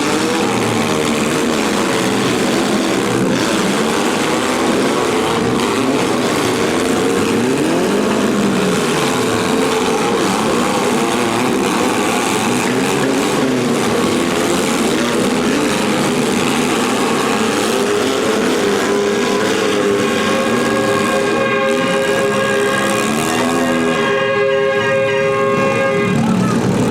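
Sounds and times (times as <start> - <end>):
car engines revving: 0.0 - 26.9
steady horn-like tone: 14.1 - 26.4.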